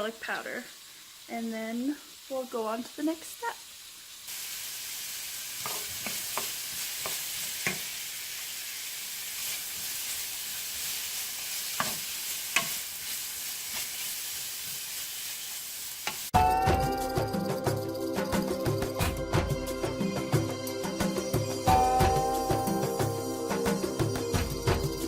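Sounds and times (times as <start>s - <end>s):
vegetables sizzling in a frying pan: 0.0s - 18.8s
music: 16.4s - 25.0s.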